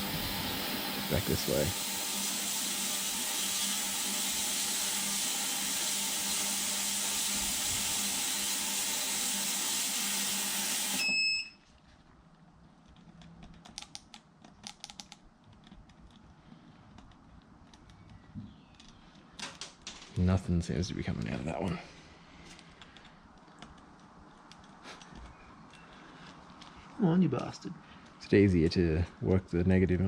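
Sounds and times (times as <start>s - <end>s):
loud steady hiss: 0.0s - 11.1s
short high beep: 11.0s - 11.6s.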